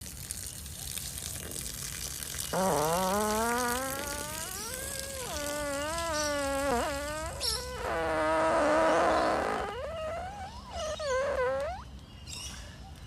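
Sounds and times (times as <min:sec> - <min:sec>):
steady hiss: 0:02.5 - 0:11.8
long buzzing fart: 0:02.5 - 0:11.9.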